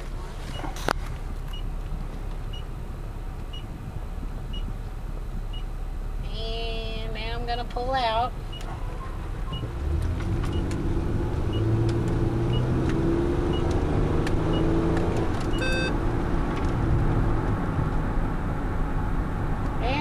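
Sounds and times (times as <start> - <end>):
minivan engine accelerating: 0.0 - 20.0
road noise inside cabin: 0.0 - 20.0
turn signal ticking: 0.0 - 20.0
short electronic beep: 15.6 - 16.0.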